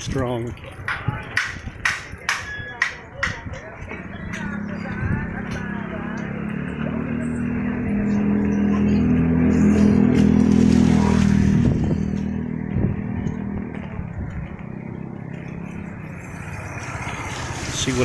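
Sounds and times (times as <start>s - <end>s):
vehicle engine humming: 3.6s - 18.0s.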